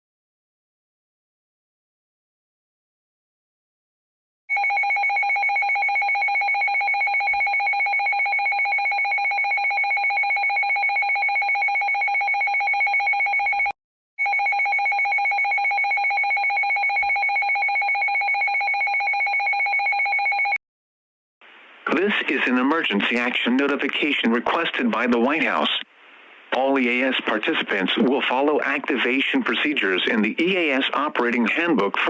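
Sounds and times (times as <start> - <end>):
shrill pulsing alarm tone: 4.5 - 20.6.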